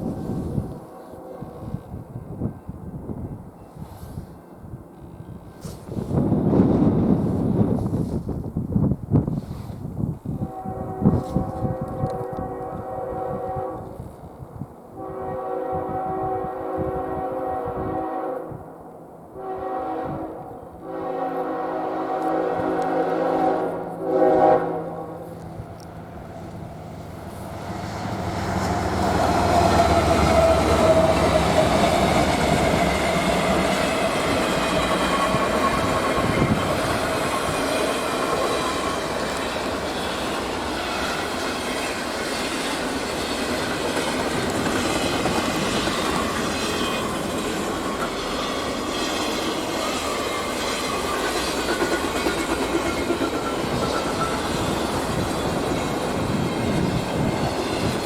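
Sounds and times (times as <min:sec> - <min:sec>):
train horn: 0:00.0 - 0:08.2, 0:09.4 - 0:58.0
train clickety-clack: 0:25.3 - 0:58.0.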